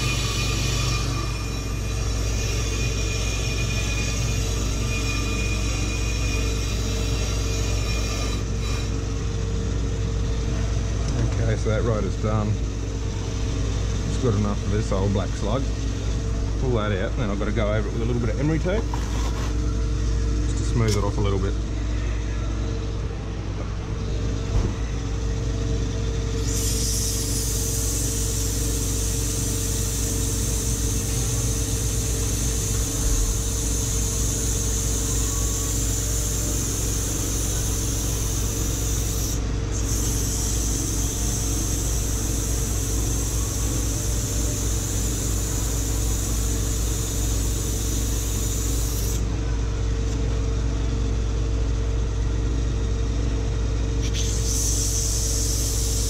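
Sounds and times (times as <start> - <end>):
brake lathe humming: 0.0 - 56.0.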